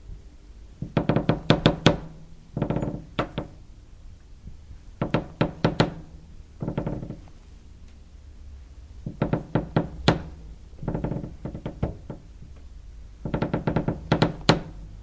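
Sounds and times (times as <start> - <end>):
wood creaking: 0.8 - 3.6, 5.0 - 7.5, 9.0 - 15.0.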